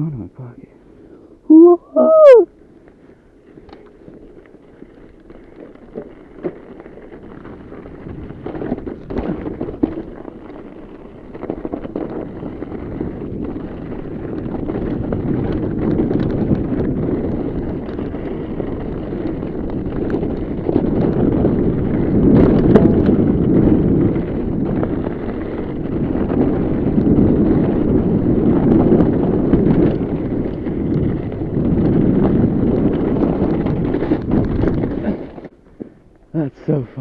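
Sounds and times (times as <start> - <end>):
bike rattling over rough ground: 2.7 - 37.0
wind buffeting microphone: 11.0 - 35.5.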